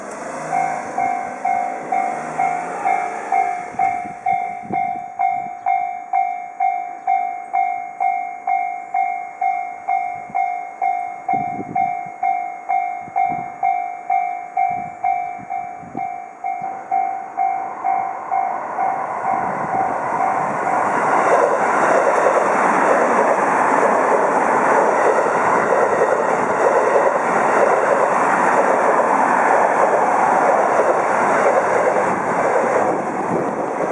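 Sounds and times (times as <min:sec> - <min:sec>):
train passing: 0:00.0 - 0:33.9
level crossing bell dinging: 0:00.5 - 0:20.4.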